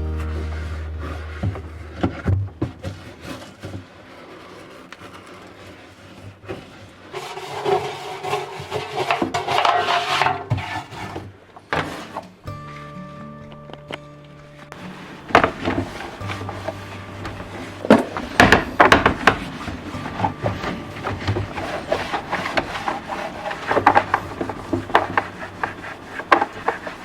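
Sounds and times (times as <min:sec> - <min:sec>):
faint background music: 0:00.0 - 0:02.8, 0:11.8 - 0:27.0
household objects clattering: 0:00.0 - 0:12.4, 0:14.6 - 0:27.0.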